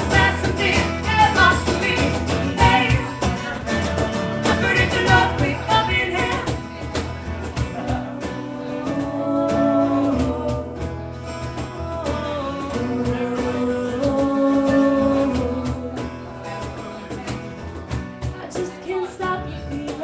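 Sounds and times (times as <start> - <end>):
person singing: 0.0 - 6.9, 7.6 - 16.3
live band music: 0.0 - 19.9
strummed guitar: 0.0 - 20.0.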